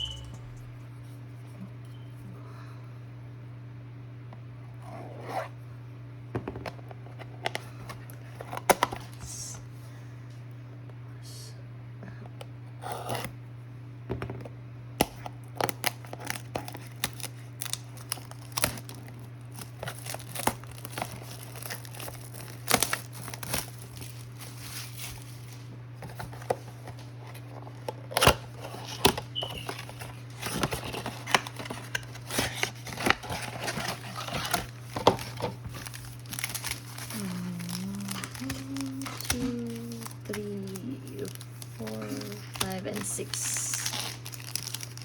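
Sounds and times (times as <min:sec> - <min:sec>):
steady low hum: 0:00.0 - 0:45.0
plastic wrapping crinkling and tearing: 0:15.1 - 0:45.0.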